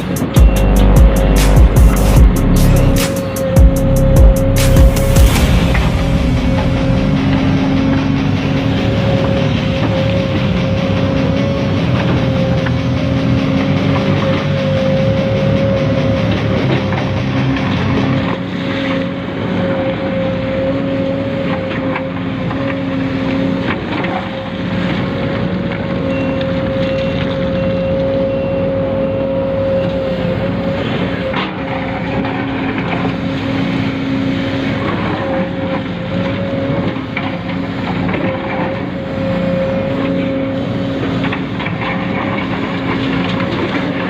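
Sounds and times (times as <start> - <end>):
low motor tones: 0.0 - 44.0.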